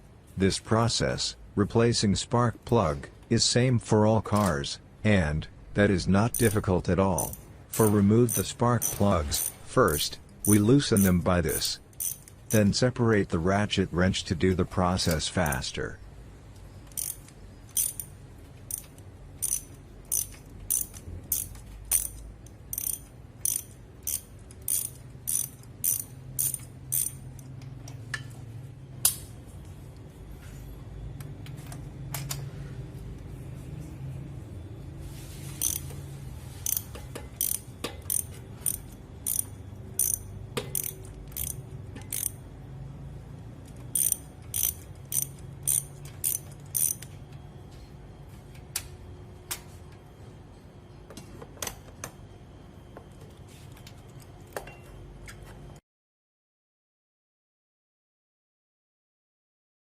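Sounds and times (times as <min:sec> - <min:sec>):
ratchet wrench clicking: 0:06.3 - 0:06.6, 0:07.2 - 0:12.6, 0:16.8 - 0:27.6, 0:35.6 - 0:36.0, 0:36.6 - 0:42.5, 0:43.6 - 0:47.1.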